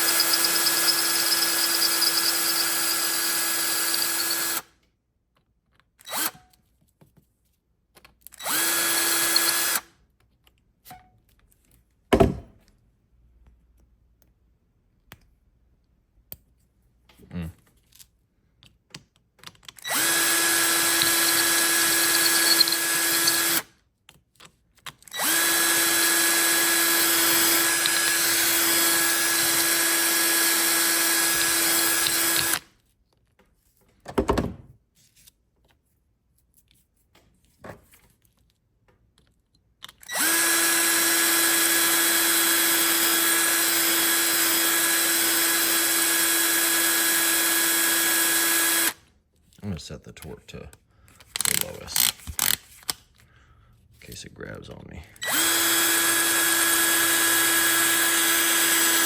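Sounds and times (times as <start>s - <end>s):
electric drill running: 0.0s - 4.7s, 8.4s - 9.9s, 19.8s - 23.7s, 25.2s - 32.6s, 40.1s - 49.0s, 55.2s - 59.0s.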